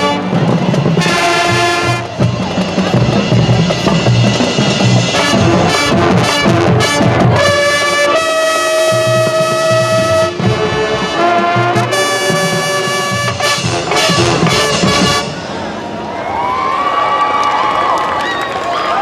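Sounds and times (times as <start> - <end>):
marching band brass: 0.0 - 16.1
drum hits: 0.3 - 8.0.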